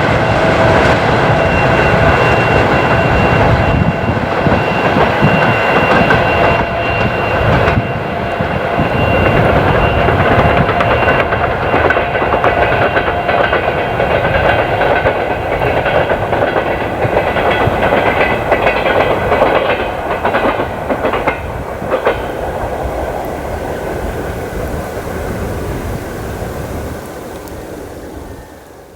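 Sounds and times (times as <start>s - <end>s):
train wheels clicking over rail joints: 0.0s - 26.0s
steady rushing sound: 0.0s - 28.4s.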